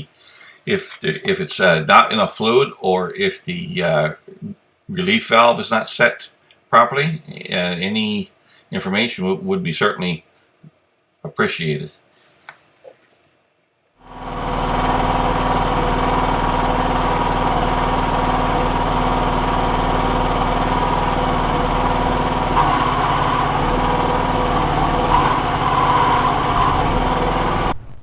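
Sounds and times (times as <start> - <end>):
small gas engine running: 14.0 - 27.9
hydraulic high whine: 14.0 - 28.0.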